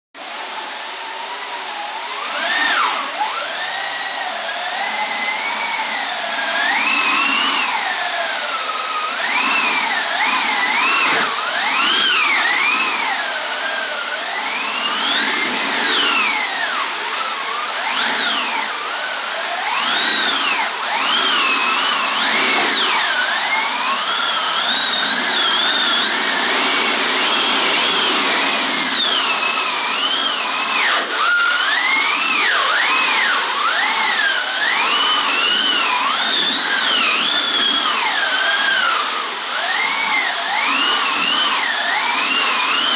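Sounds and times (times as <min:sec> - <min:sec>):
wind machine howling: 0:00.7 - 0:42.9.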